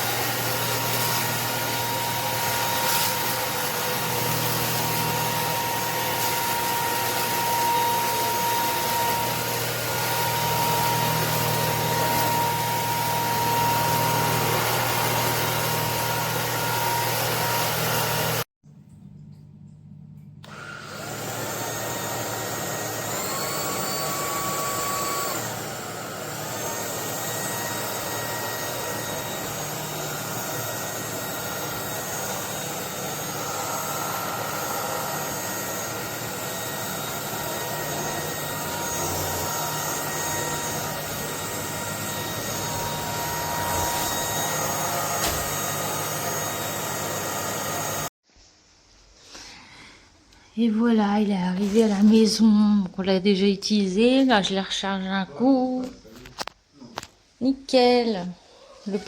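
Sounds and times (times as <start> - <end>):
vacuum cleaner motor whine: 0.0 - 18.5, 20.4 - 48.2.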